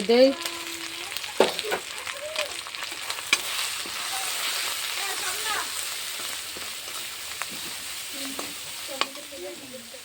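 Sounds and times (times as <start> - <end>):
onions sizzling in hot oil: 0.0 - 10.0.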